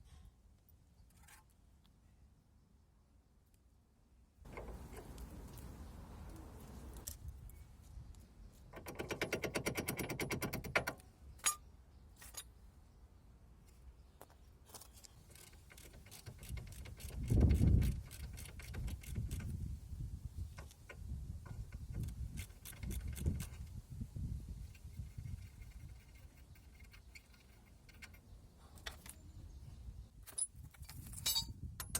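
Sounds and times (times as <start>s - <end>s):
tools clicking and knocking: 8.7s - 11.6s, 15.3s - 19.6s, 30.2s - 31.9s.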